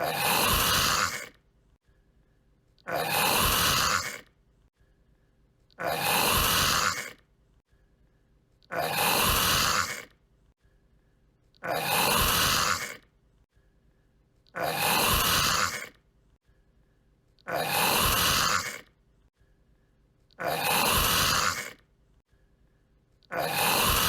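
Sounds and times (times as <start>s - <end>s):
person clearing throat: 0.0s - 1.3s.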